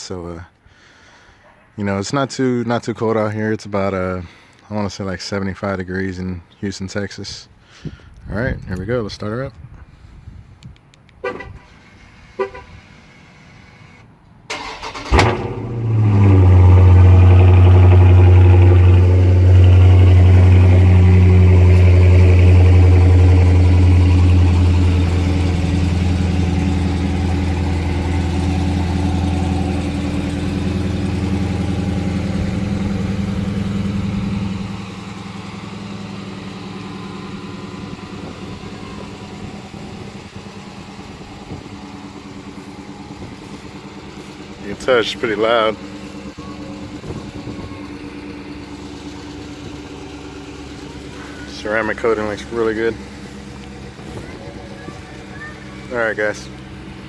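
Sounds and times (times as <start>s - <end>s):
car engine idling: 11.2s - 57.0s.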